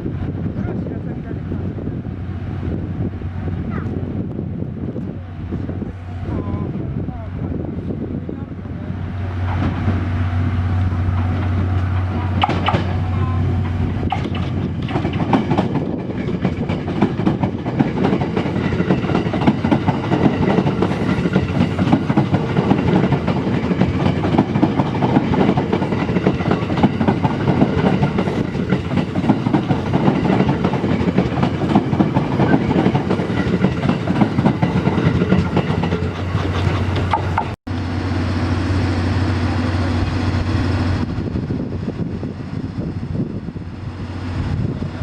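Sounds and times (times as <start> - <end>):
train wheels clattering over rails: 8.9 - 37.6.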